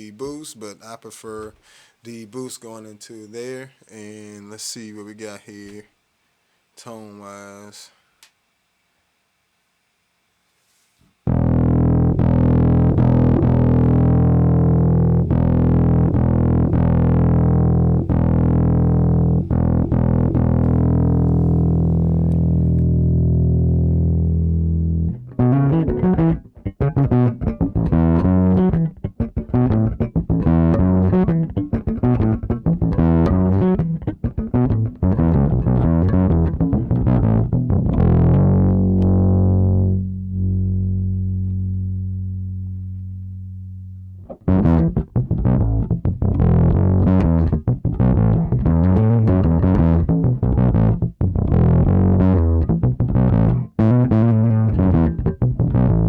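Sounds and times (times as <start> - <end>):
overdriven electric bass: 11.2 - 56.0.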